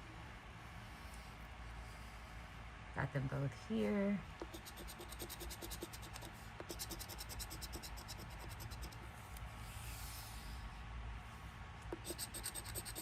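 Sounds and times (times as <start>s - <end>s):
lottery ticket being scratched: 4.4s - 9.0s, 12.0s - 13.0s.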